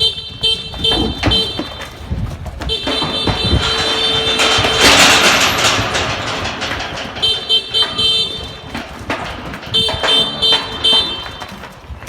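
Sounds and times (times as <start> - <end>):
motorbike horn short beeps: 0.0 - 2.0, 2.7 - 5.1, 7.2 - 8.7, 9.7 - 11.4.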